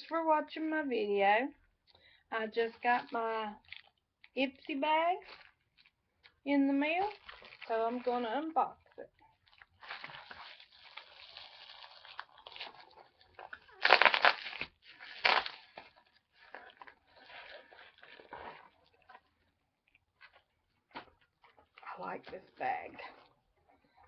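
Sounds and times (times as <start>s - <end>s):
plastic wrapping crinkling: 2.6s - 23.3s
package being torn open: 9.5s - 18.4s.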